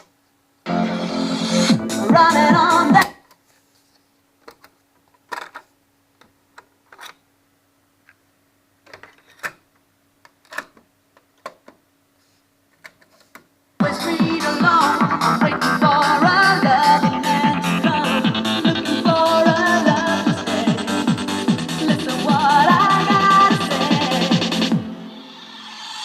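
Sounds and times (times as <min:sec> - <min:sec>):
music: 0:00.7 - 0:03.2, 0:13.8 - 0:26.0.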